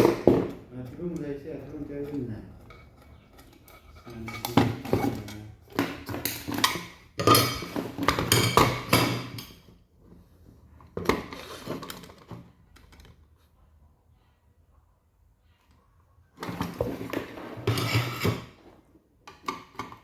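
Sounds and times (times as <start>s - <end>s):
tools clattering on workbench: 0.0s - 1.1s, 2.0s - 9.7s, 16.4s - 18.7s.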